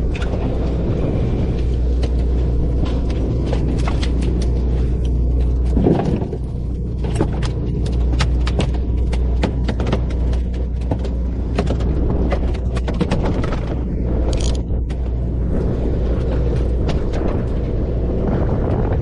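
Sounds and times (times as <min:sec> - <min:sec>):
boat engine rumble: 0:00.0 - 0:19.0
sharp clicks and knocks: 0:01.9 - 0:15.1.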